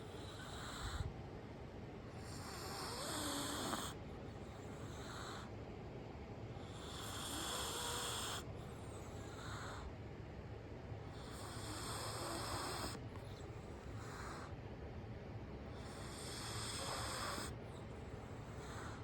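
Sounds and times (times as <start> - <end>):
heavy snoring: 2.2 - 4.0, 6.7 - 8.4, 11.2 - 13.0, 15.9 - 17.6.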